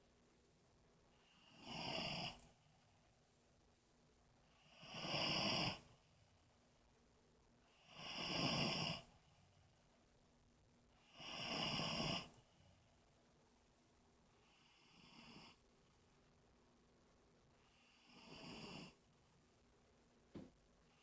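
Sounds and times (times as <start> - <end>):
quiet breaths: 0.0 - 21.0
man snoring: 1.4 - 2.4, 4.7 - 5.8, 7.8 - 9.1, 11.1 - 12.4, 17.9 - 19.0.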